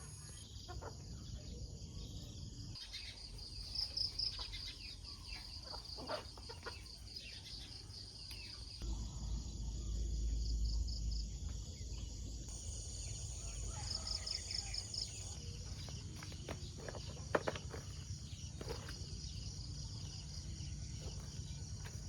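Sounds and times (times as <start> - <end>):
crickets chirping: 0.0 - 22.0
chicken clucks: 0.5 - 1.4, 4.2 - 7.2
low rumble: 8.8 - 13.6.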